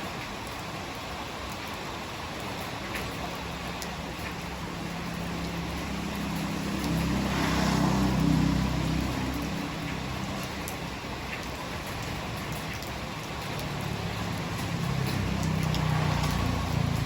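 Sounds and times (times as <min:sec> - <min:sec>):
rain hiss: 0:00.0 - 0:17.0
tyres hissing on wet road: 0:00.0 - 0:17.0
vehicle engine passing: 0:04.8 - 0:11.0, 0:13.6 - 0:17.0.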